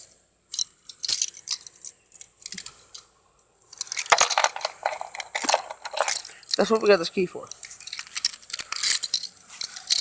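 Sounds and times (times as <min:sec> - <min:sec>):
keys jangling: 0:00.5 - 0:03.0, 0:03.8 - 0:06.7, 0:07.5 - 0:10.0.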